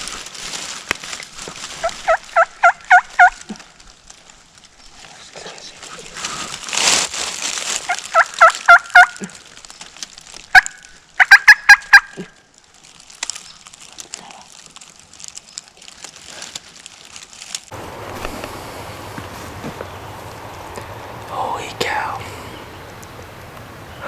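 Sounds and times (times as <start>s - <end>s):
wild turkey calling: 8.1s - 9.1s, 10.5s - 12.2s, 17.7s - 24.0s.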